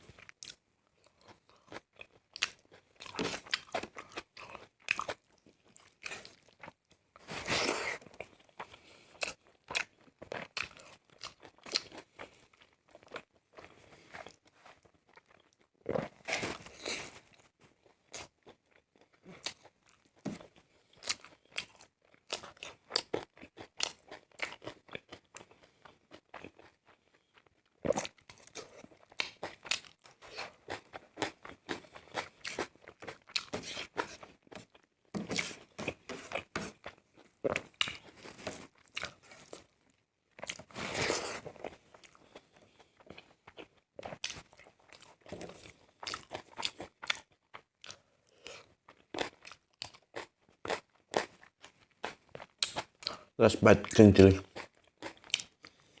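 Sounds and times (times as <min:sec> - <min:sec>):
person chewing and crunching food: 0:00.0 - 0:56.0.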